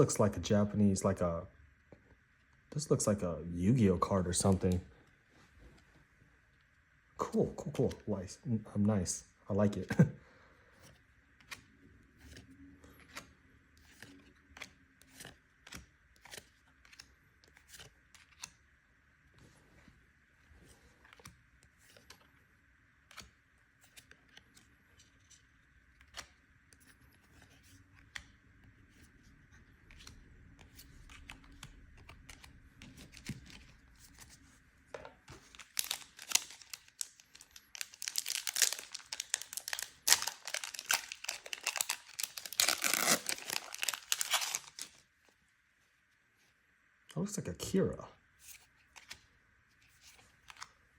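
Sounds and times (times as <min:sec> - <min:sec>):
trading cards clicking and snapping: 0:13.0 - 0:18.5
foil wrapper crinkling and tearing: 0:35.4 - 0:45.0.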